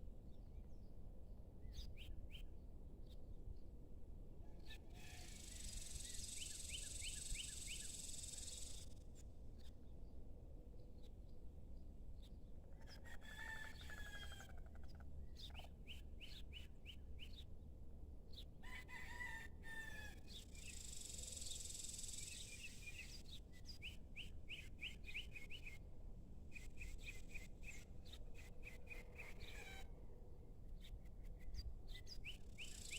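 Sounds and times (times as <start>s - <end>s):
distant rooster crowing: 12.8s - 14.8s, 18.6s - 20.3s.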